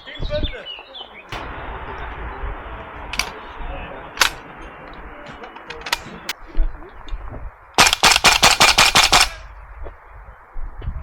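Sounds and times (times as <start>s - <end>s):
airsoft rifle shots: 7.8s - 9.4s.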